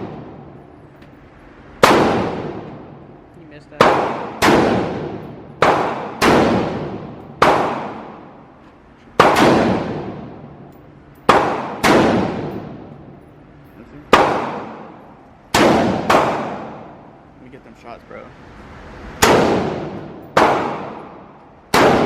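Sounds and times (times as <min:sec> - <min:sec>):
echoing gunshots: 0:00.0 - 0:00.6, 0:01.7 - 0:03.2, 0:03.8 - 0:08.5, 0:09.1 - 0:10.7, 0:11.3 - 0:13.1, 0:14.1 - 0:17.2, 0:19.2 - 0:22.0.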